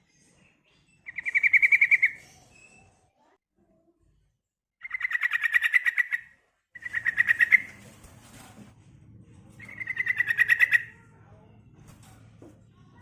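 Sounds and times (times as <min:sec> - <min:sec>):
bird chattering trills: 0:01.1 - 0:02.2, 0:04.8 - 0:06.2, 0:06.8 - 0:07.8, 0:09.6 - 0:10.9.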